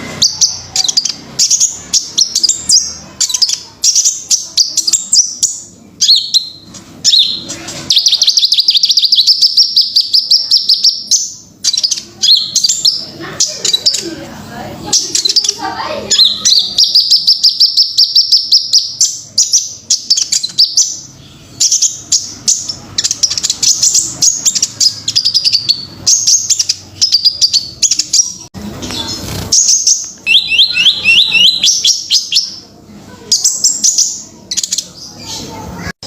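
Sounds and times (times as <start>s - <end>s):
bird chirps and trills: 0.0s - 14.2s, 14.8s - 36.0s
noisy rustle: 28.6s - 30.2s.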